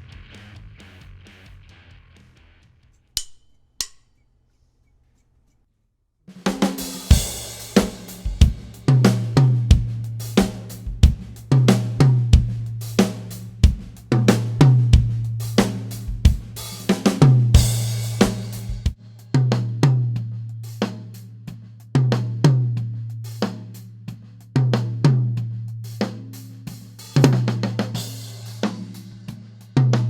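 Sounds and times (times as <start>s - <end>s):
acoustic drum kit groove: 6.3s - 30.0s.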